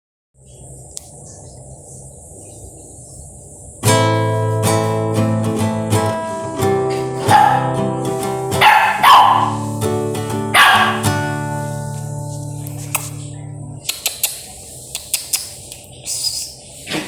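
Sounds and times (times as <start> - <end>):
acoustic guitar strumming: 3.8 - 13.9
dog barking: 7.2 - 9.8, 10.4 - 11.7.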